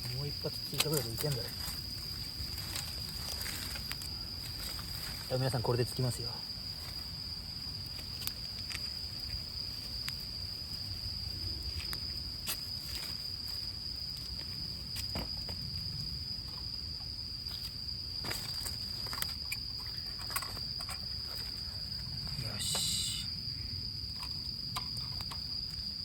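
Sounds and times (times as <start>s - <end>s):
campfire crackling: 0.0s - 5.3s
insects trilling: 0.0s - 26.0s.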